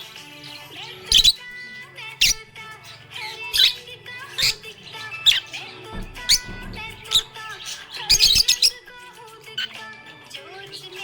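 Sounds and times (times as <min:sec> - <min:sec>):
background music: 0:00.0 - 0:11.0
budgerigar chirping: 0:01.1 - 0:01.4.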